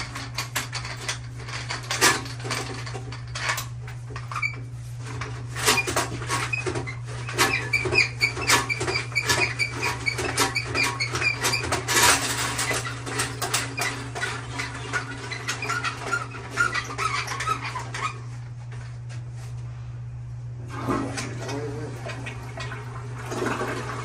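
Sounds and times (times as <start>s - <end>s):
auger cable clattering on porcelain: 5.6s - 18.1s.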